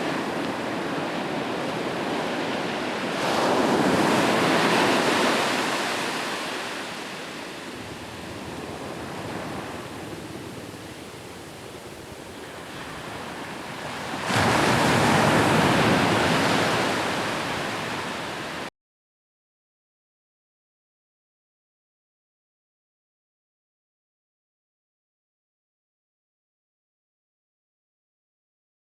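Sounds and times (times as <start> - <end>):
ocean waves breaking: 0.0 - 18.7.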